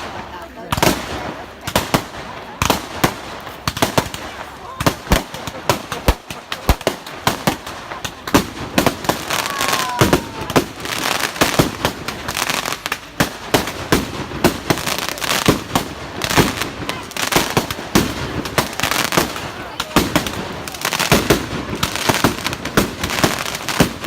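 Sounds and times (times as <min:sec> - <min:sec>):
fireworks bangs and crackling: 0:00.0 - 0:24.0.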